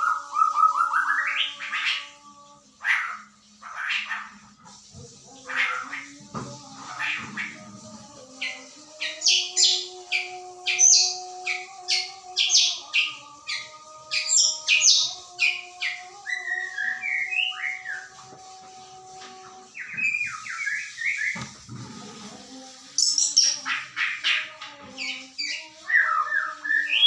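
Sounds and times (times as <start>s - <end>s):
bird singing: 0.0s - 4.4s, 5.3s - 18.4s, 19.0s - 21.6s, 23.0s - 27.0s.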